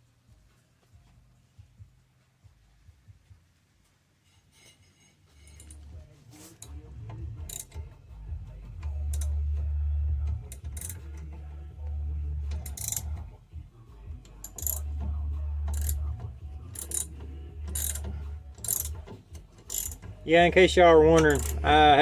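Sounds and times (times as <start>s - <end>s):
metal tools clinking on brake parts: 4.3s - 6.8s, 7.5s - 7.8s, 10.5s - 11.2s, 12.6s - 13.2s, 14.3s - 15.0s, 16.7s - 20.2s, 21.1s - 22.0s.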